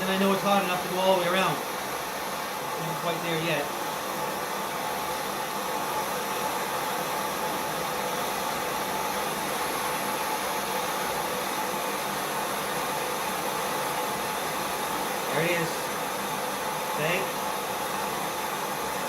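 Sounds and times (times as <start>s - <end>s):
soldering torch flame hissing: 0.0s - 19.0s.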